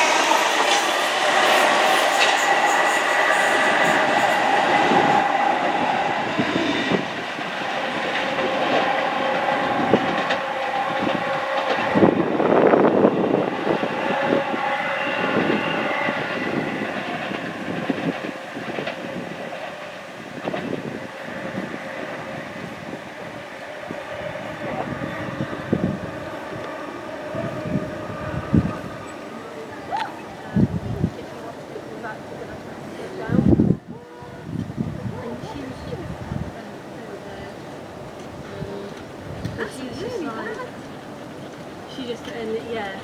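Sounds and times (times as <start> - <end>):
train wheels clattering over rails: 0.0 - 33.7.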